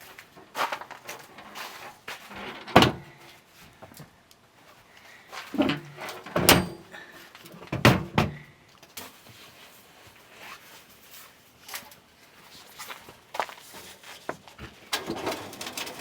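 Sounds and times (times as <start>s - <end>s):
handling noise: 5.5s - 7.0s
hard knocks and clunks: 5.6s - 6.9s, 7.7s - 8.4s.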